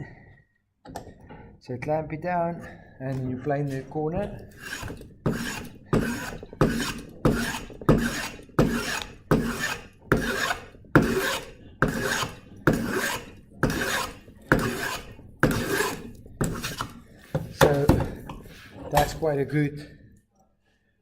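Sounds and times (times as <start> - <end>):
hand plane shaving wood: 4.4 - 17.8.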